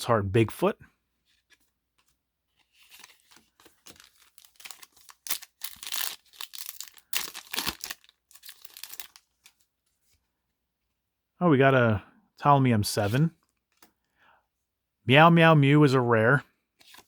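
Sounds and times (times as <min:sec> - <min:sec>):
foil pack tearing and crinkling: 0:03.0 - 0:09.2.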